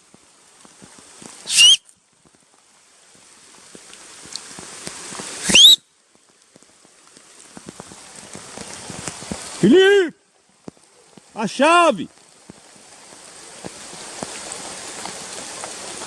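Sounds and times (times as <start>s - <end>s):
person whistling: 1.5s - 1.8s, 5.4s - 5.8s.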